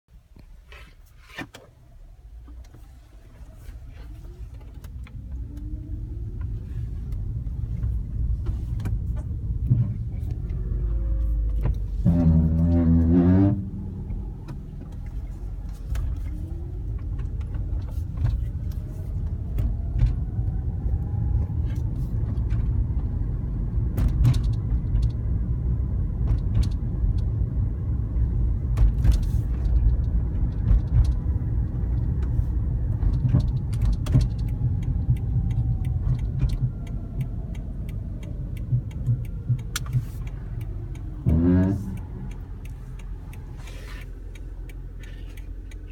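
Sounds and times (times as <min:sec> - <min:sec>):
faint car whine: 0:00.1 - 0:45.9
road and tyre rumble: 0:00.1 - 0:45.9
brake groan: 0:00.6 - 0:23.2, 0:28.3 - 0:45.9.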